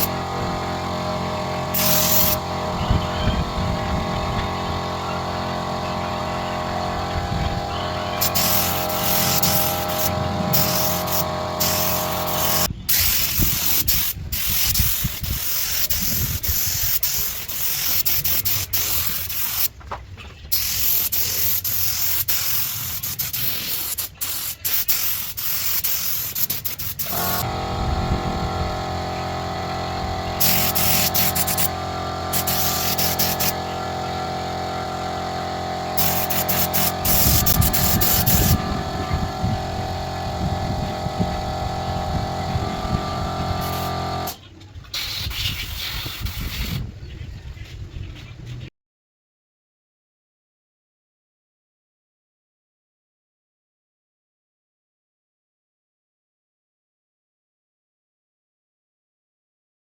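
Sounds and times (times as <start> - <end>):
electric power tool grinding wood: 0.0 - 12.7, 27.0 - 44.4.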